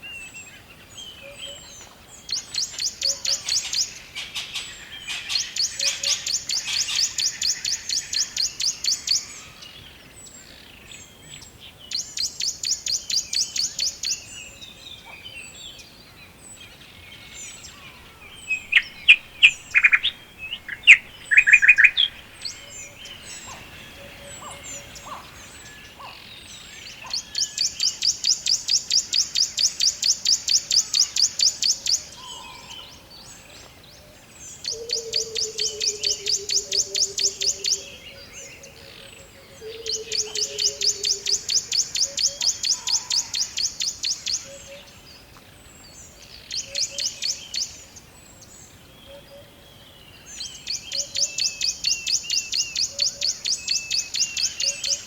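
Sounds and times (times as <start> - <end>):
bird loud short chirps: 17.9 - 24.9
bird high rapid trill: 18.0 - 25.2.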